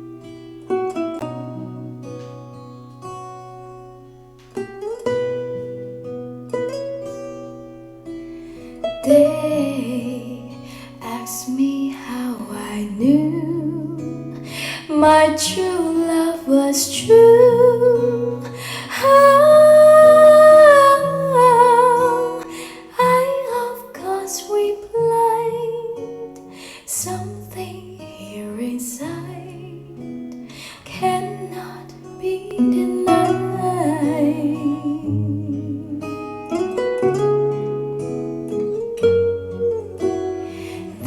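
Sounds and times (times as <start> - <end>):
plucked acoustic guitar: 0.0 - 41.0
woman singing with vibrato: 9.0 - 26.3, 26.9 - 29.9, 30.8 - 36.3.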